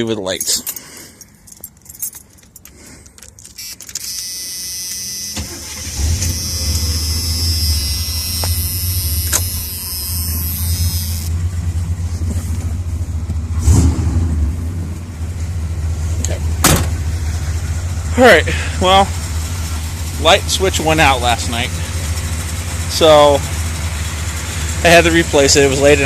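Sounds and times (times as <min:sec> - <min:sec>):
truck engine starting and idling: 0:00.6 - 0:26.0.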